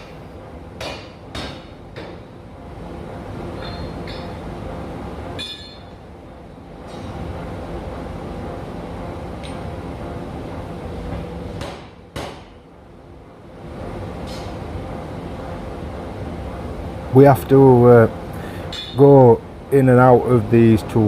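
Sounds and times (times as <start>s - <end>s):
ringing metallic clink: 5.4s - 5.9s
sharp metal knocks: 11.6s - 12.6s.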